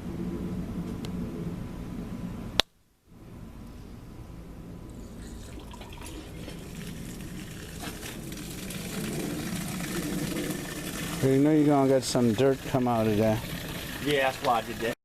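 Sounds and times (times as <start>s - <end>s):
water rushing from pipe: 4.9s - 15.0s.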